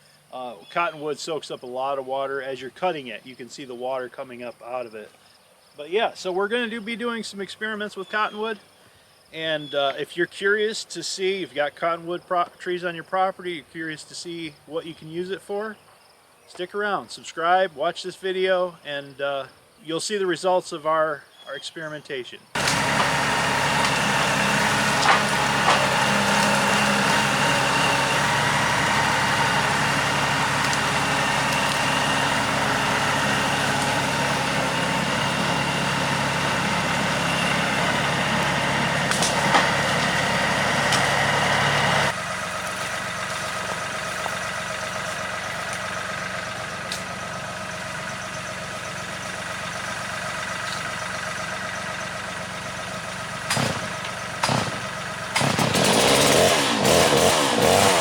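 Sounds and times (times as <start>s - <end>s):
sawmill engine running: 22.5s - 58.0s.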